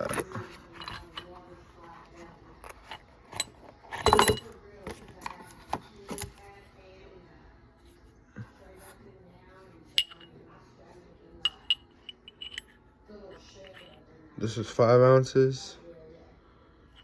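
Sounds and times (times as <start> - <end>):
metal bars clinking: 0.0 - 1.5, 2.6 - 6.4, 9.9 - 10.4, 11.4 - 12.8.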